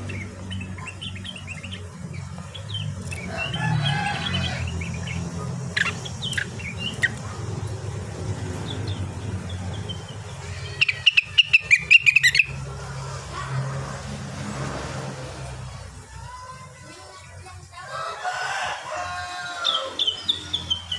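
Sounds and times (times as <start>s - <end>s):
songbird chirps: 0.0s - 12.6s, 16.1s - 20.9s
fast run of sharp bird notes: 0.0s - 13.5s.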